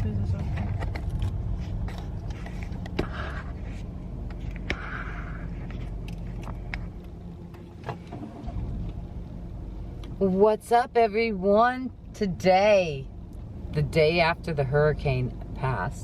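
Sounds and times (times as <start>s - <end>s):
road and engine rumble: 0.0s - 16.0s.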